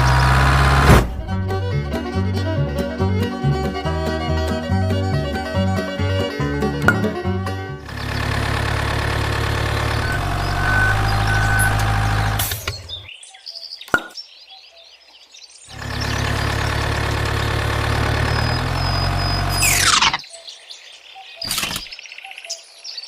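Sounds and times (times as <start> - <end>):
birds chirping faintly: 12.5 - 16.8
toy vehicle motor running: 15.8 - 20.2.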